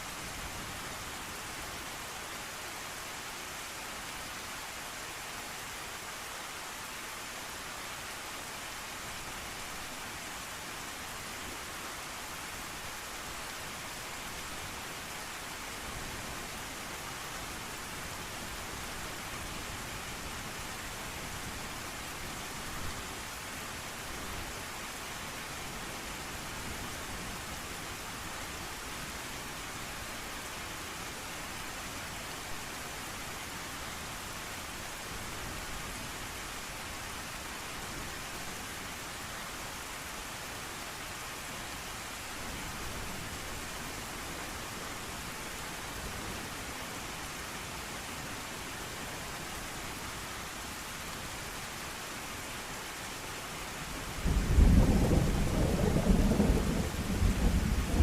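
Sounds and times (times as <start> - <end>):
heavy rain hiss: 0.0 - 58.0
thunder rumbling: 54.3 - 58.0.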